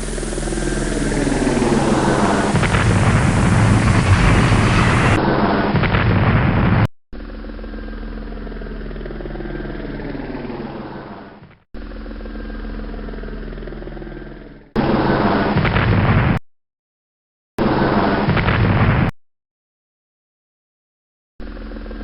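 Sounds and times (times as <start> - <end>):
helicopter-style whirring hum: 0.0 - 5.8, 7.2 - 15.6, 21.4 - 22.0
explosion-like blast: 0.0 - 6.9, 15.2 - 16.4, 17.6 - 19.1.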